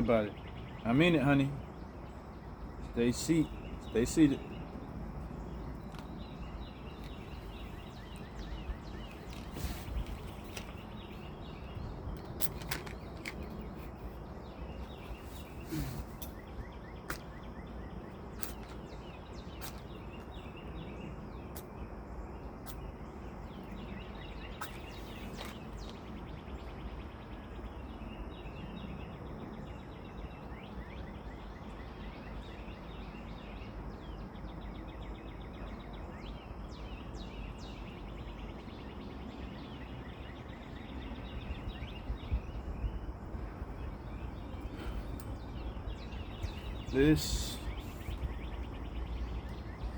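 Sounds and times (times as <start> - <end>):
faint bird chirps: 0.0 - 49.9
steady low rumble: 40.3 - 49.9.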